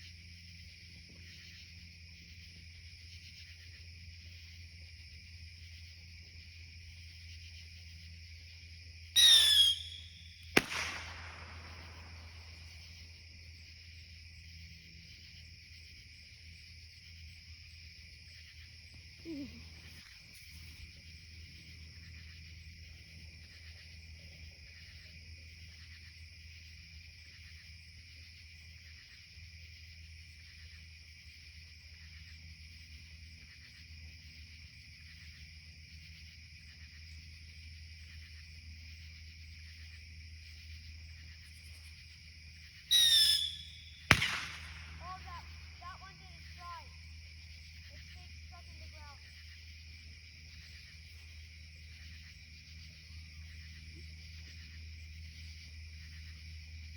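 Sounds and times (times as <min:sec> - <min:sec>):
night insects chirring: 0:00.0 - 0:56.9
firework bang: 0:10.6 - 0:12.2, 0:43.4 - 0:45.0.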